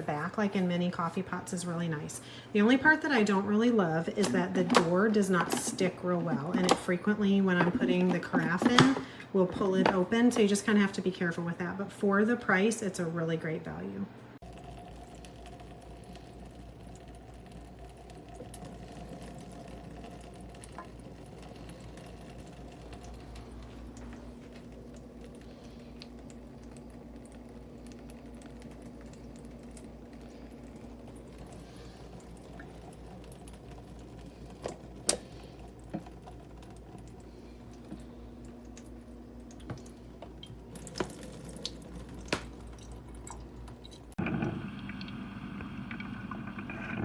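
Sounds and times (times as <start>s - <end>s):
coffee maker hum: 0.0s - 11.1s, 14.4s - 47.0s
coffee dripping: 14.4s - 47.0s.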